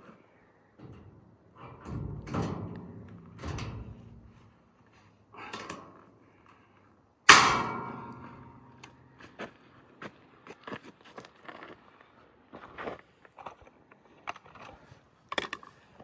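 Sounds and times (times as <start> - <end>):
light clicks and knocks: 0.8 - 4.6, 7.3 - 9.3
loud metallic bang ringing: 0.9 - 4.7, 7.3 - 9.3.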